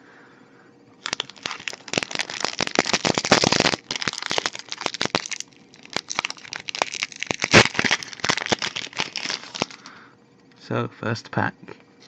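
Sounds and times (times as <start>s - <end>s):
foil wrapper crinkling: 1.0s - 10.0s.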